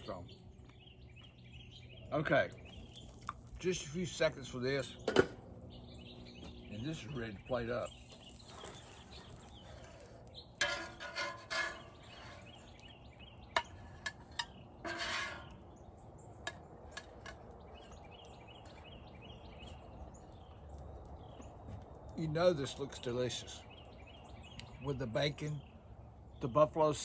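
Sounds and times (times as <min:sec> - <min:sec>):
utensils scraping on griddle: 0:08.2 - 0:12.8, 0:13.6 - 0:15.7.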